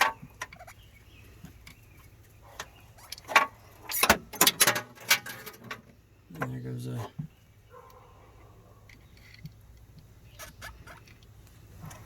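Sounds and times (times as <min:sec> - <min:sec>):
metal clicks and knocks: 0:02.6 - 0:06.6.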